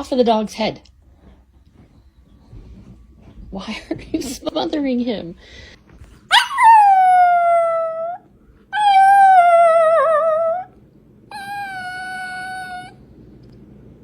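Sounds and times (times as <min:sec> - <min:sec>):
pet wailing calls: 0:11.3 - 0:13.0.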